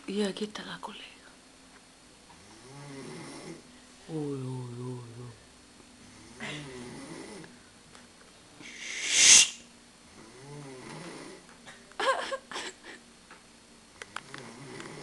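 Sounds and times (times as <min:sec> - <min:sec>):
people snoring: 0:02.4 - 0:03.6, 0:06.1 - 0:07.6, 0:14.2 - 0:15.0
high-pitched wheezing snort: 0:08.6 - 0:09.6.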